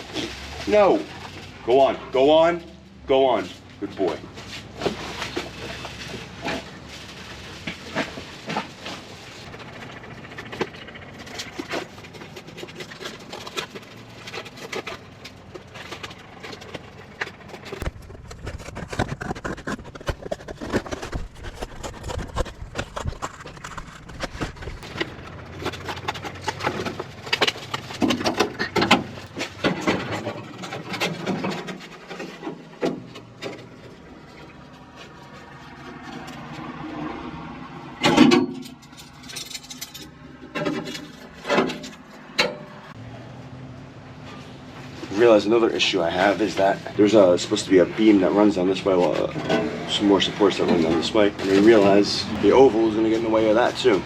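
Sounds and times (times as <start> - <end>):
hands scraping and knocking: 11.8 - 33.5.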